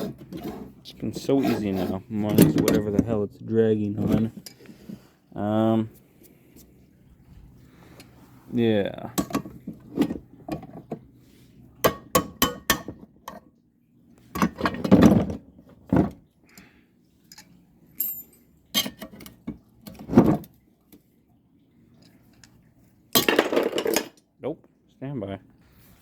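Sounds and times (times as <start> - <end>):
metal tools clinking: 17.3 - 19.0.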